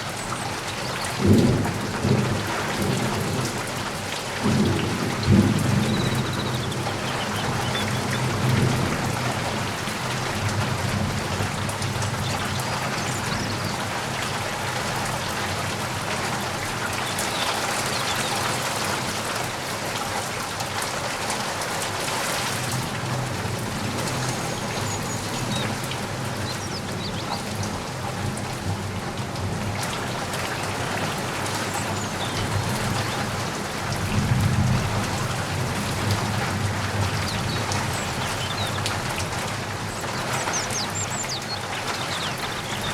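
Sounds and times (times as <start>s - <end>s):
rain pattering: 0.0s - 42.9s.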